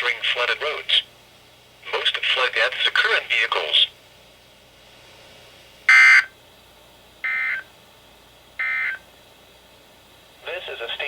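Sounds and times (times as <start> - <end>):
digital data tone bursts: 5.9 - 6.3.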